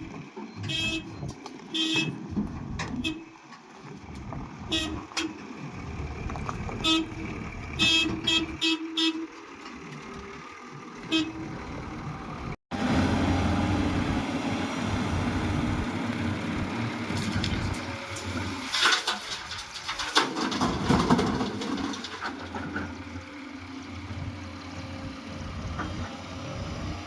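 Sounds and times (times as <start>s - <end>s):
low engine rumble: 0.0s - 27.0s
vehicle horn tooting: 0.6s - 2.2s, 3.0s - 3.3s, 4.7s - 5.4s, 6.8s - 7.2s, 7.8s - 9.3s, 11.0s - 11.6s.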